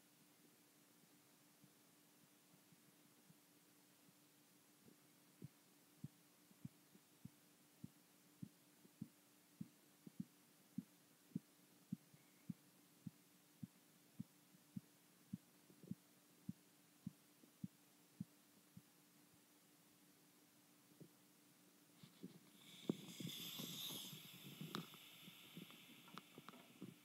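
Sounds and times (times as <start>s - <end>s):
faint steady hum: 0.0s - 27.0s
pulse thumps through stethoscope: 22.0s - 27.0s.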